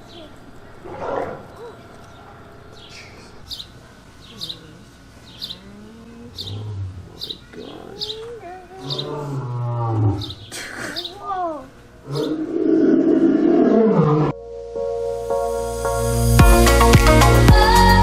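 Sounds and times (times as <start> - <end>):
bird chirping: 0.0 - 12.5
lion roaring: 0.8 - 1.8, 5.5 - 10.5, 11.3 - 14.4.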